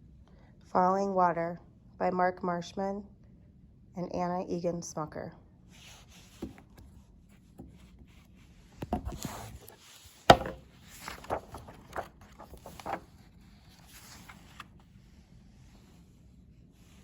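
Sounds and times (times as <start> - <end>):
soft knocks of pages turning: 5.9 - 14.9
paper rustling: 8.8 - 14.8.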